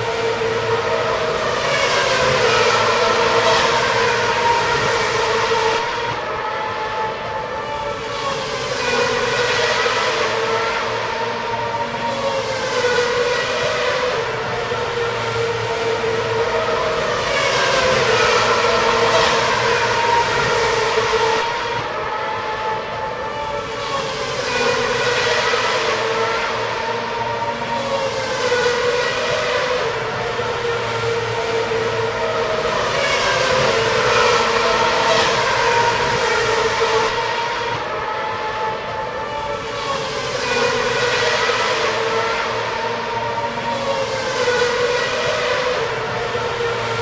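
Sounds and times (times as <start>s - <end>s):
racing car engines passing by: 0.0s - 47.0s.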